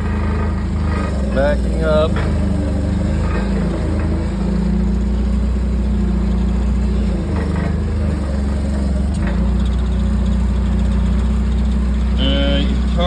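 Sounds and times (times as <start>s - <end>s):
forklift engine running: 0.0s - 13.0s.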